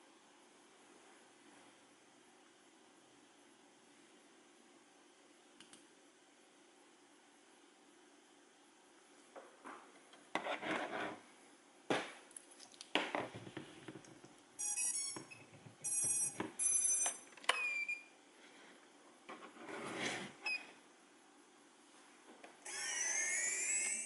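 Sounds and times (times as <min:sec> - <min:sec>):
high electronic beeps: 0:14.6 - 0:17.2, 0:22.7 - 0:24.0.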